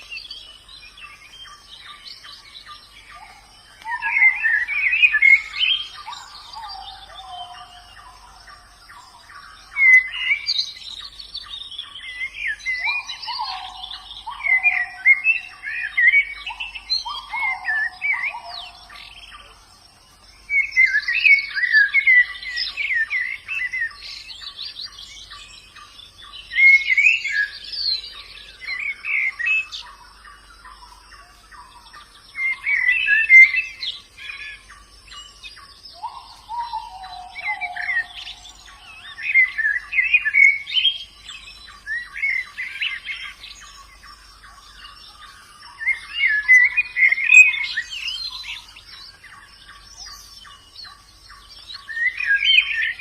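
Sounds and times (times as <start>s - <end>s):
birds twittering: 0.0s - 53.0s.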